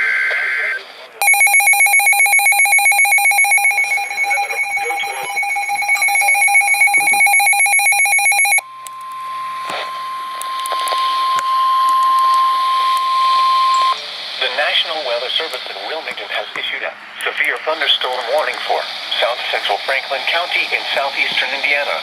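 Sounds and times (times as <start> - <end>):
radio static: 0.3 - 8.6, 14.4 - 22.0
pulsing attention tone: 1.2 - 8.6
steady warning alarm tone: 1.2 - 14.0.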